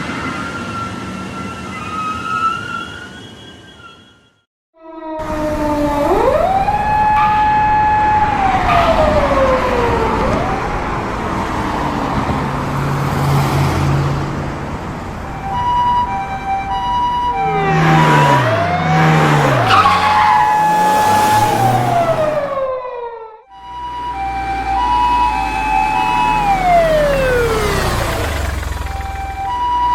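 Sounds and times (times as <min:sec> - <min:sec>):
two-tone hi-lo siren: 0:03.8 - 0:12.0, 0:15.1 - 0:29.9
police siren wailing: 0:04.8 - 0:12.5, 0:14.9 - 0:29.9
vehicle noise: 0:05.2 - 0:29.9.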